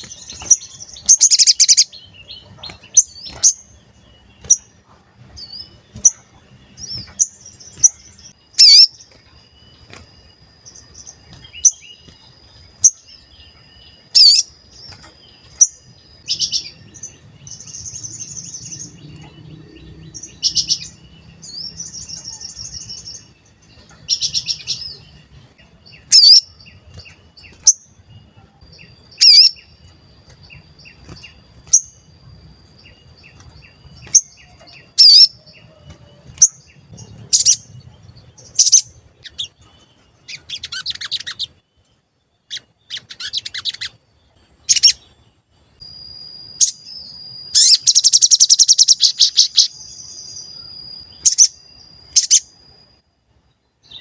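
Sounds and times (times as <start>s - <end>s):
bird rattling trill: 0.0s - 13.0s
songbird chirps and whistles: 0.0s - 53.0s.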